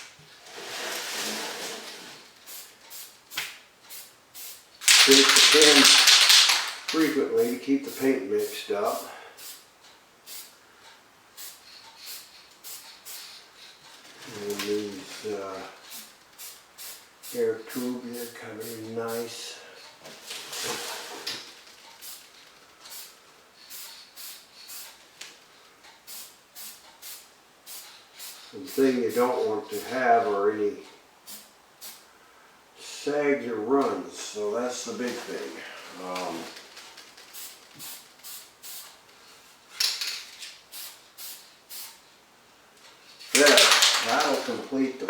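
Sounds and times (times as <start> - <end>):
spray paint can hissing bursts: 2.4 - 9.7, 10.3 - 10.5, 11.4 - 13.8, 15.8 - 19.2, 22.0 - 25.0, 26.0 - 29.8, 31.2 - 32.0, 37.2 - 39.0, 40.7 - 42.0, 43.2 - 44.6.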